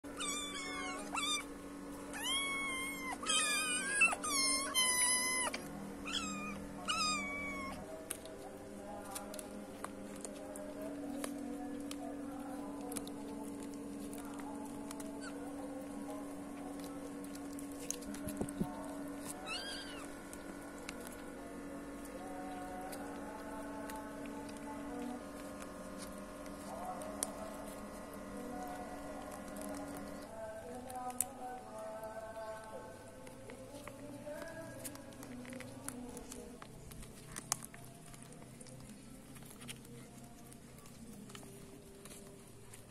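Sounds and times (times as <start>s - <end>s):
kittens meowing: 0.1s - 1.5s, 2.1s - 7.8s, 19.4s - 20.2s
steady low hum: 0.1s - 42.9s.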